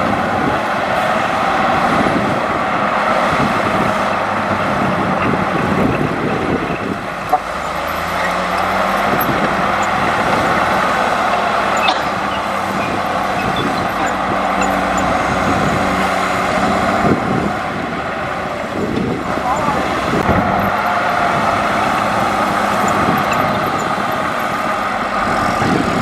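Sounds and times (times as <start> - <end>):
diesel machinery running: 0.0 - 26.0
sharp clicks: 5.2 - 15.2.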